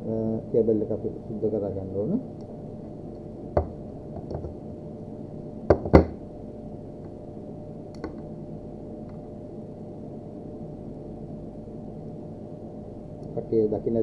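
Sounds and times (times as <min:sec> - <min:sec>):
loud knocks: 0:03.6 - 0:04.6, 0:05.7 - 0:06.2.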